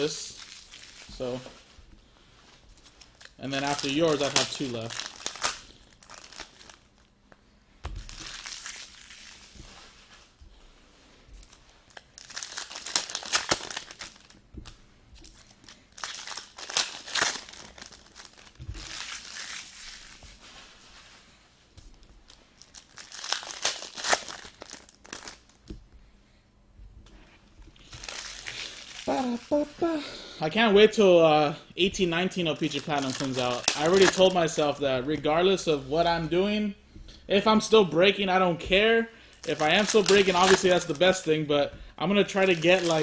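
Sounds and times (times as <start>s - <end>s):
wrapper crinkling and tearing: 0.0s - 1.6s, 2.8s - 7.1s, 8.0s - 10.1s, 11.4s - 20.4s, 22.2s - 25.7s, 27.7s - 29.6s, 32.3s - 34.8s, 39.3s - 41.5s, 42.1s - 43.0s.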